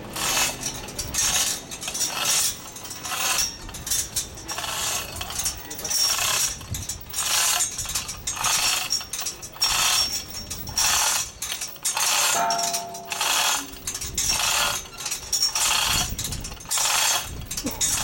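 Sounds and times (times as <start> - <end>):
metal chain rattling and clinking: 0.2 - 18.0
short ringing tone: 12.4 - 13.7.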